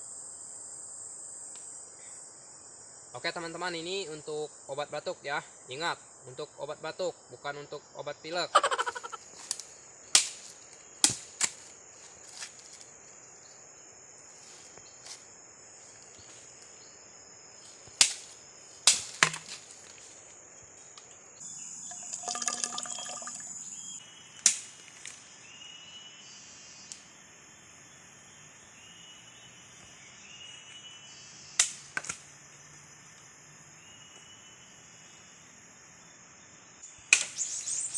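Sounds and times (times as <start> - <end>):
sharp knocks or chops: 18.8 - 19.6
high-pitched insect drone: 21.4 - 24.2.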